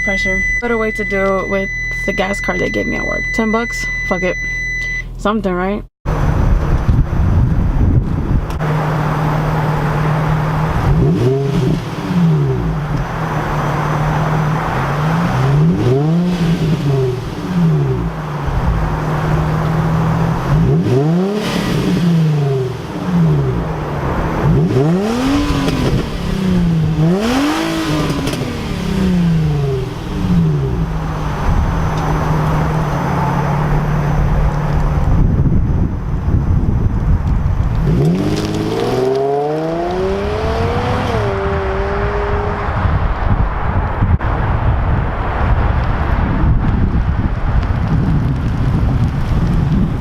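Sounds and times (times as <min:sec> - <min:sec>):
car engine drone: 0:00.0 - 0:50.0
steady rush of noise: 0:39.5 - 0:50.0.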